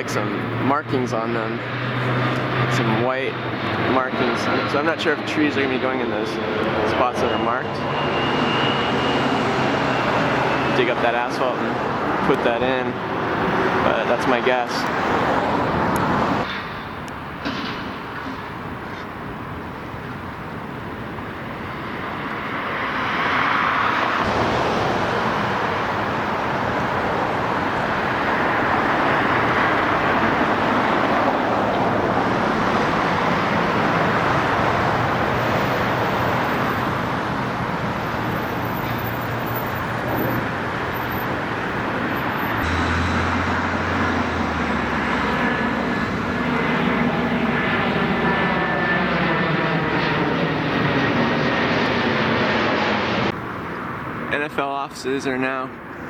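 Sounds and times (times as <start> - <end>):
aircraft engine and rushing air: 0.0 - 56.0
sweeping whoosh: 38.6 - 48.2.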